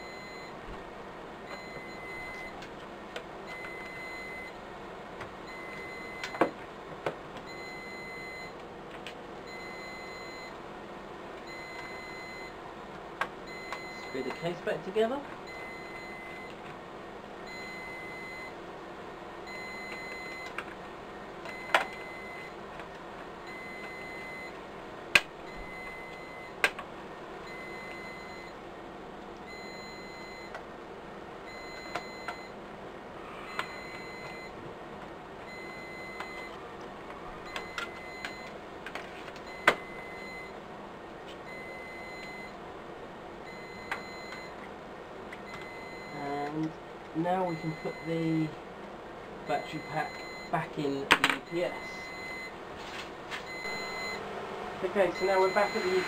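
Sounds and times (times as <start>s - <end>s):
steady hum: 0.0s - 56.0s
faint pulsing high tone: 53.5s - 54.3s.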